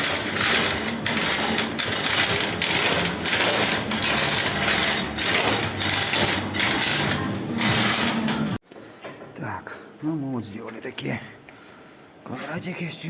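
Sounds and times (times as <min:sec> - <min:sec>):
power tool rasping on steel: 0:00.0 - 0:08.5.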